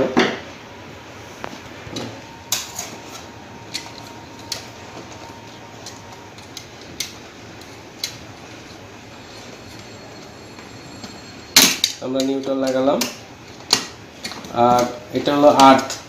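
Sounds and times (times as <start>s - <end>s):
hand tools clicking and tapping: 1.9s - 8.8s, 11.6s - 16.0s.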